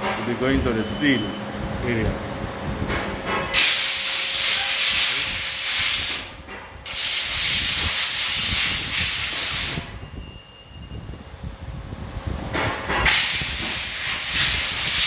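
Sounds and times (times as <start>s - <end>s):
pressurised jet hissing: 3.5s - 9.9s, 13.1s - 15.0s.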